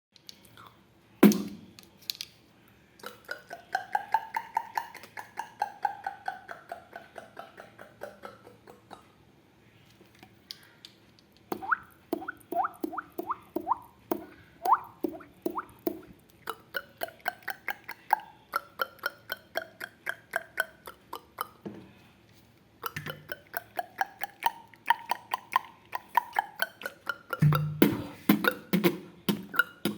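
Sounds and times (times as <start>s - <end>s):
drop-like mouth plinks: 11.5s - 21.6s, 22.8s - 29.9s
mouth clicks imitating dripping: 11.5s - 21.6s, 22.8s - 29.9s.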